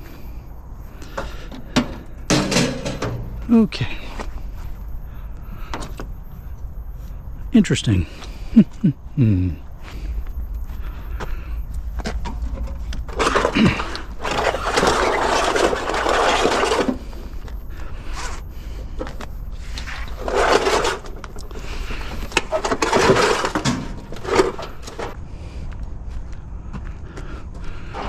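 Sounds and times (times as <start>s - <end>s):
scrap metal scraping: 1.7s - 3.5s, 12.0s - 17.3s, 19.6s - 25.2s.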